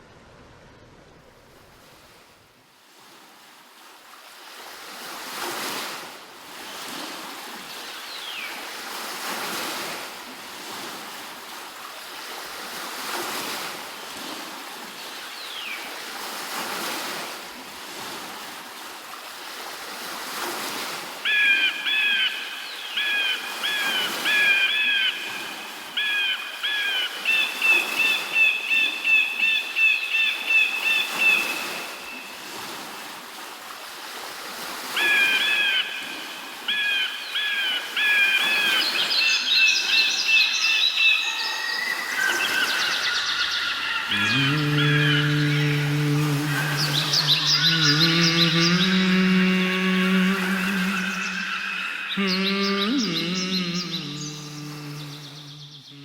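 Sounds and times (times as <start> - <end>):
waterfall rushing: 41.7 - 56.0.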